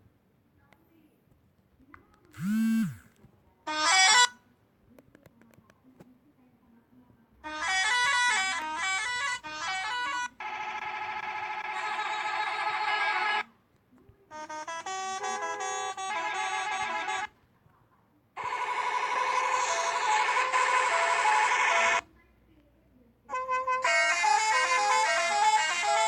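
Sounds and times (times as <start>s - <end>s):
musical air horn: 14.3s - 17.3s, 23.3s - 26.0s.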